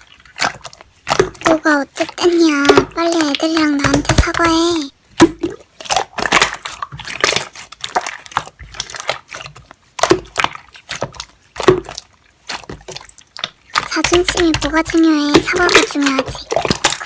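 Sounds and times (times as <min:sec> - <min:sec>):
slime squished by hand: 0:00.0 - 0:17.0.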